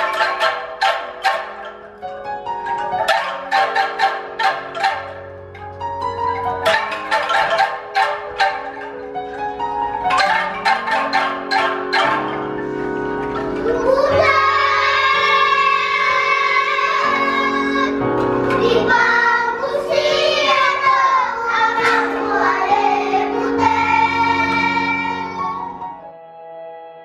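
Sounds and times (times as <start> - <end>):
sustained instrumental accompaniment: 0.0 - 27.0
children's choir singing: 6.4 - 25.8.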